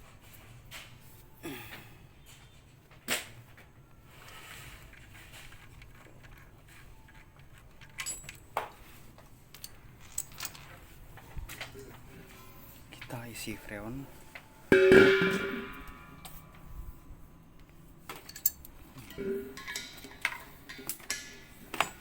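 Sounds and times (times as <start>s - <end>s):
low steady hum: 3.6s - 22.0s
metallic clinks of tools: 18.1s - 22.0s.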